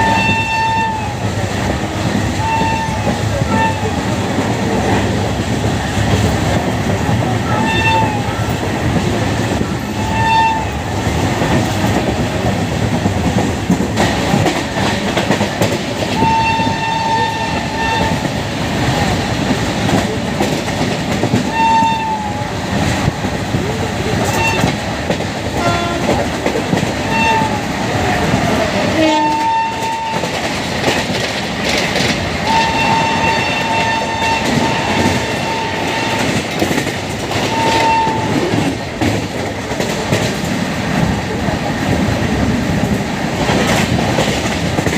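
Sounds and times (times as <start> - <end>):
locomotive horn: 0.0 - 4.2, 7.4 - 8.6, 9.8 - 11.0, 16.1 - 18.4, 21.4 - 22.5, 24.2 - 24.8, 25.6 - 26.4, 27.0 - 27.8, 28.9 - 30.4, 32.4 - 38.7
train rumble and clickety-clack: 0.0 - 44.9.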